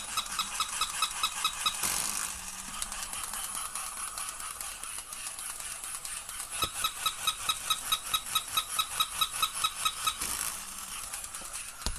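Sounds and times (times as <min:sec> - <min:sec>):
toy mechanism ringing clicks: 0:00.0 - 0:11.8.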